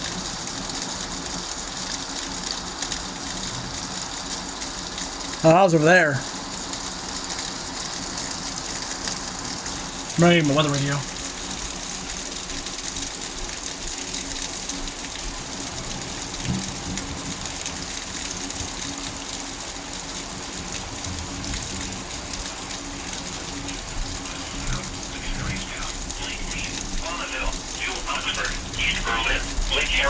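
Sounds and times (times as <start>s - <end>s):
steady rain hiss: 0.0s - 30.0s.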